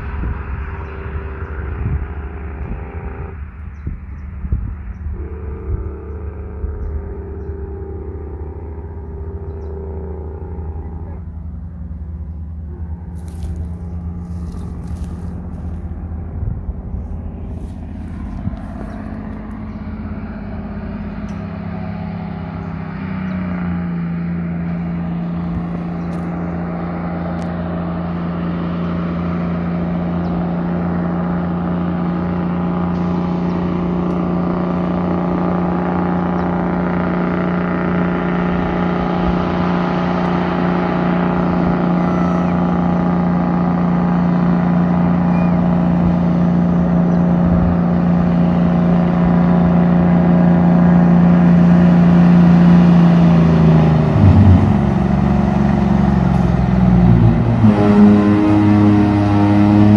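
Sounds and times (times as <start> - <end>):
truck diesel engine braking: 0.0 - 59.9.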